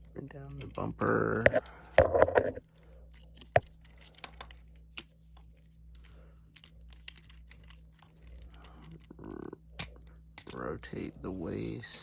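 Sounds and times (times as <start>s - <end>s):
plastic toy parts clicking: 5.9s - 9.2s, 9.8s - 10.6s.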